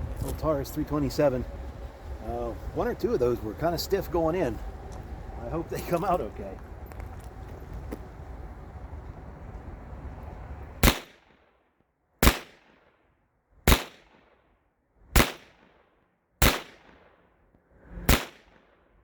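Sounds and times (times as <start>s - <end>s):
revolver gunshots: 10.8s - 11.3s, 12.2s - 12.8s, 13.7s - 14.3s, 15.1s - 15.8s, 16.4s - 17.2s, 18.0s - 18.7s.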